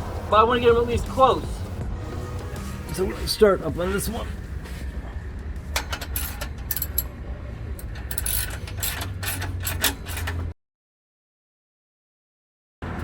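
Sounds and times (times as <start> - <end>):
metal parts clinking: 5.8 - 7.2, 7.8 - 10.4
ratchet wrench clicking: 6.1 - 7.1, 7.8 - 10.4.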